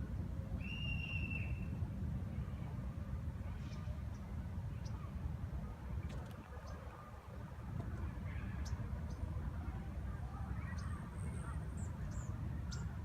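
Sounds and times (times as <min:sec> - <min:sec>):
faint lower bird calls: 0:00.6 - 0:01.8
small birds chirping: 0:10.6 - 0:13.0.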